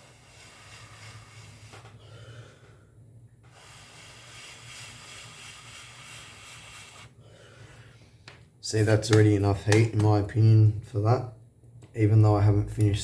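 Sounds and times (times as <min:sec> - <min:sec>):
soft breathing: 0:00.0 - 0:08.3
low electrical hum: 0:00.0 - 0:13.0.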